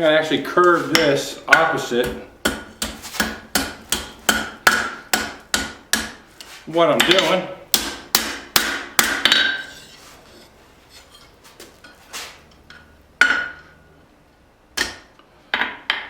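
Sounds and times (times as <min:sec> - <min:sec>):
hammer striking steel on anvil: 0:00.7 - 0:06.2, 0:07.0 - 0:10.0, 0:12.6 - 0:13.8, 0:14.8 - 0:16.0.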